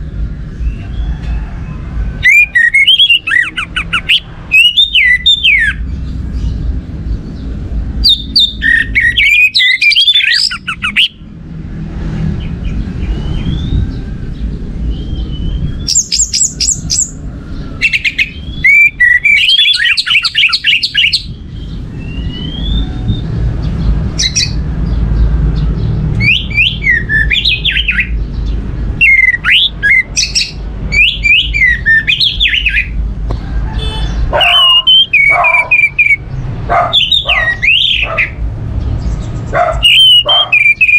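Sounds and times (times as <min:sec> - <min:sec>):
thrush singing: 0:34.0 - 0:38.4, 0:39.4 - 0:40.9.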